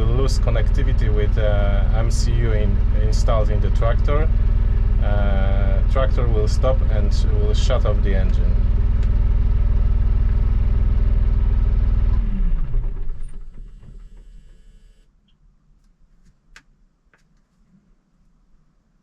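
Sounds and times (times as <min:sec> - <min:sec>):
tractor diesel engine winding down: 0:00.0 - 0:15.0.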